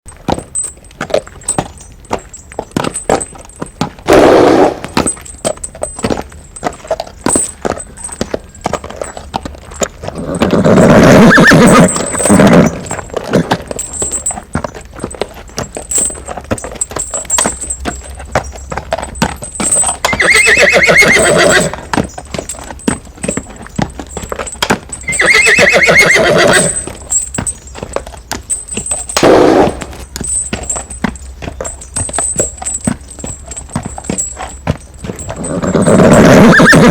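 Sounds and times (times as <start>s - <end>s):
horse hooves clip-clopping: 0.0s - 36.9s
horse neighing: 10.0s - 12.9s, 20.0s - 21.9s, 25.0s - 26.9s, 35.3s - 36.9s.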